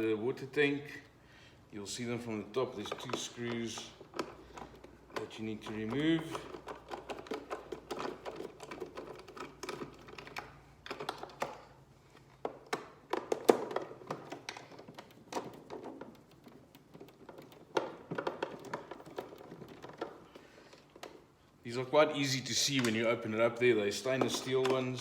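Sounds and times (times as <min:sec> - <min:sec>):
hard plastic parts handled: 0:01.9 - 0:21.6, 0:22.2 - 0:25.0.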